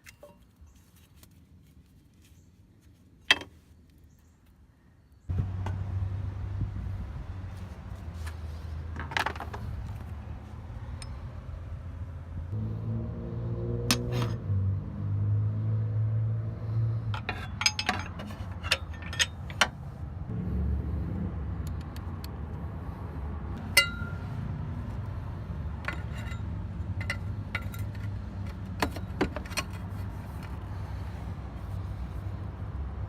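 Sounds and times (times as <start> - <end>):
metal tools clinking: 17.2 - 19.8, 23.7 - 24.3, 25.8 - 30.5
ringing metallic ping: 23.7 - 24.2.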